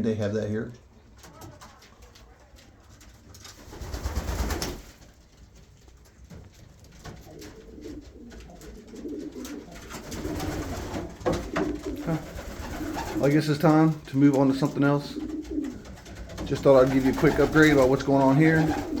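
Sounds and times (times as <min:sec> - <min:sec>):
light clicks of birds moving: 0:00.7 - 0:19.0
rustling noise: 0:01.6 - 0:19.0
pigeons cooing: 0:07.0 - 0:19.0.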